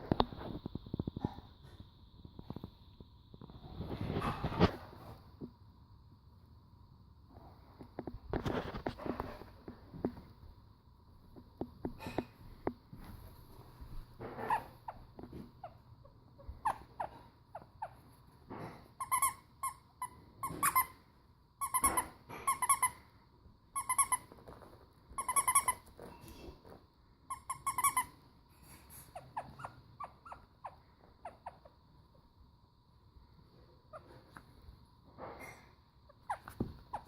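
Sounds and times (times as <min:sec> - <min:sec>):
puppy squeaking: 0:14.4 - 0:18.0, 0:25.2 - 0:25.9, 0:27.3 - 0:28.1, 0:28.9 - 0:31.8, 0:36.1 - 0:37.0.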